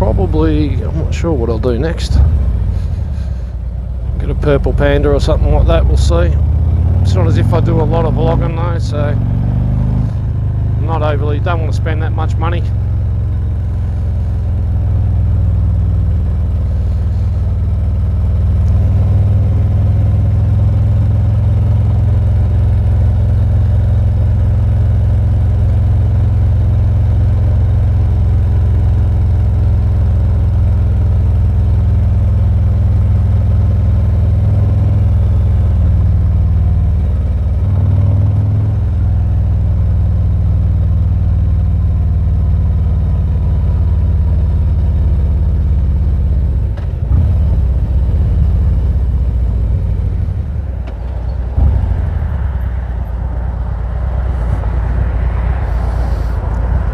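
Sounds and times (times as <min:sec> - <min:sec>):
motorcycle engine running: 0:00.0 - 0:56.9
wind rumble on microphone: 0:51.6 - 0:56.9.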